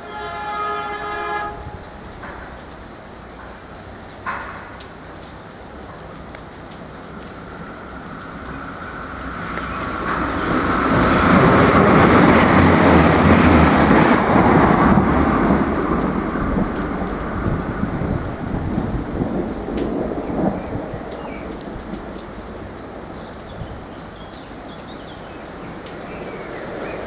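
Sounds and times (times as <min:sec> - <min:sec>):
diesel train passing: 0:00.0 - 0:04.3, 0:06.8 - 0:23.9.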